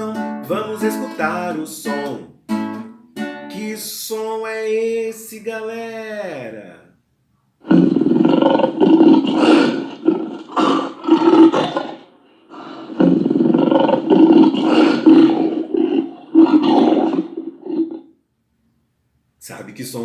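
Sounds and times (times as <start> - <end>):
lion roaring: 7.6 - 18.1.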